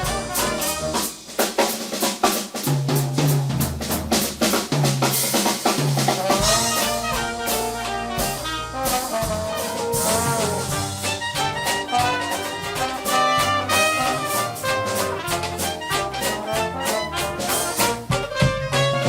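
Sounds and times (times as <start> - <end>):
brass horns melody: 0.0 - 1.4, 6.1 - 19.0
drum kit beat: 0.0 - 19.0.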